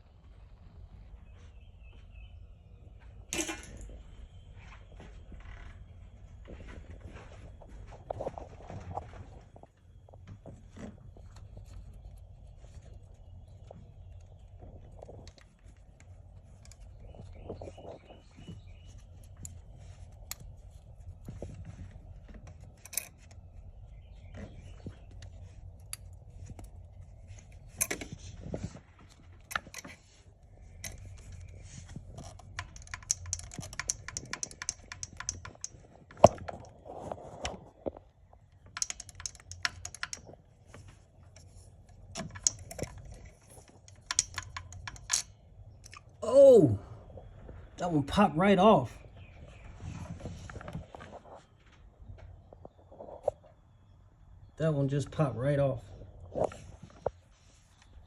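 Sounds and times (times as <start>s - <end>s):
faint low hum: 0.0s - 58.0s
clicks and snaps of parts: 3.3s - 3.8s, 30.8s - 36.7s, 38.7s - 41.5s, 42.1s - 46.1s.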